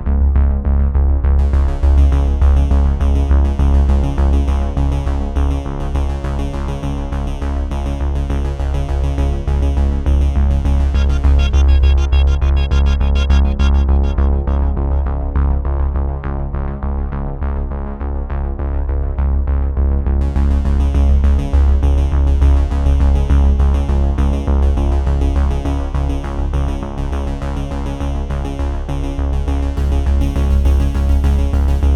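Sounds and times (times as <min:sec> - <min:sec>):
heavy bass line: 0:09.4 - 0:17.7, 0:28.7 - 0:31.9
electronic synthesizer music: 0:10.9 - 0:15.7.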